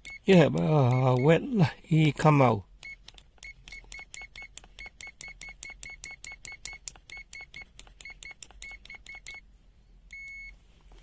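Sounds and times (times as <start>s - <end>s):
multimeter buzzer beeping: 0.0s - 1.6s, 2.8s - 9.5s, 10.1s - 10.6s.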